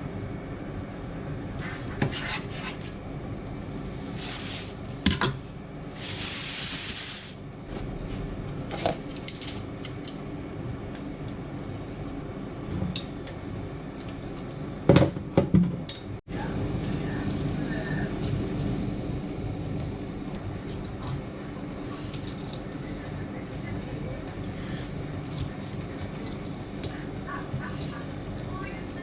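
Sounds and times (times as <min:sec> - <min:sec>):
low background hum: 0:00.0 - 0:29.0
short bursts of hiss: 0:04.0 - 0:04.9, 0:06.0 - 0:07.4.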